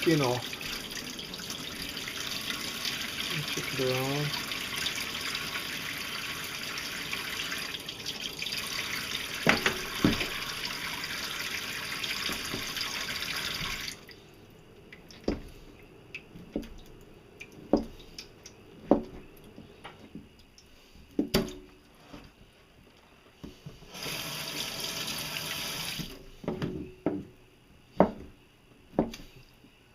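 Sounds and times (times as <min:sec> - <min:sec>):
tap water running: 0:00.0 - 0:21.5, 0:23.8 - 0:26.2
knocks and clunks in sink: 0:09.4 - 0:10.6, 0:12.2 - 0:12.8, 0:15.2 - 0:15.5, 0:17.6 - 0:18.0, 0:18.8 - 0:20.3, 0:21.2 - 0:21.7, 0:26.4 - 0:27.3, 0:28.0 - 0:29.3.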